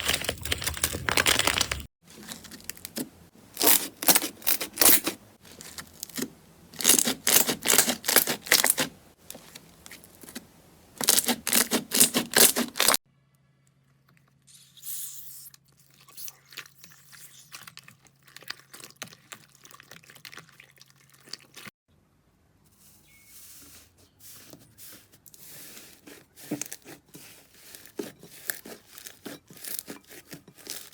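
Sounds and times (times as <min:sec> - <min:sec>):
slime crackling and popping: 0:03.6 - 0:08.9.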